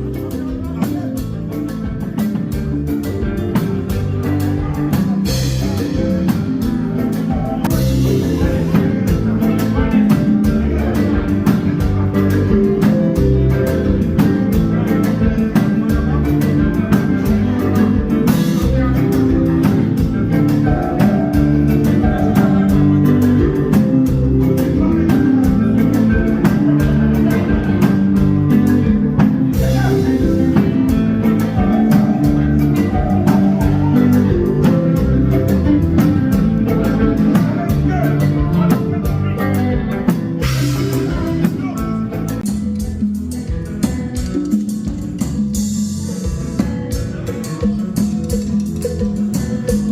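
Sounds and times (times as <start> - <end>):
band music with guitar and drums: 0.0 - 49.9.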